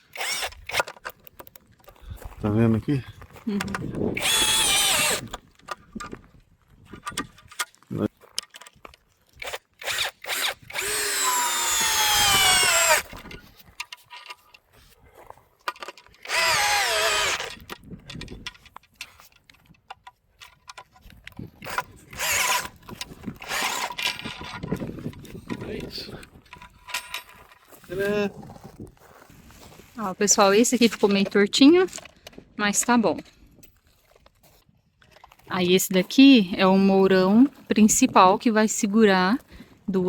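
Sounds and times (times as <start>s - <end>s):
power drill driving screws into wood: 0.0s - 1.5s, 3.6s - 5.5s, 9.4s - 13.4s, 16.1s - 17.8s, 21.6s - 25.3s
small clicks and handling knocks: 6.9s - 9.6s, 15.6s - 16.3s, 17.5s - 22.0s.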